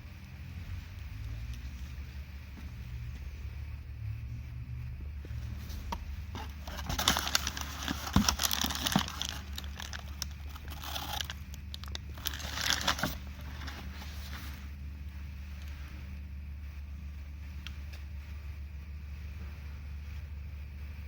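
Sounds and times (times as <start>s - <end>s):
crackling scraping rustle: 5.3s - 16.3s.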